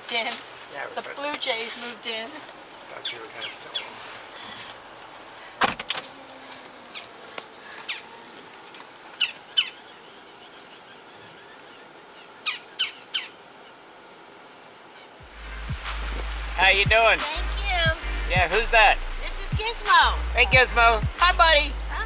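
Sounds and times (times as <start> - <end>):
birds chirping: 0.0 - 13.9.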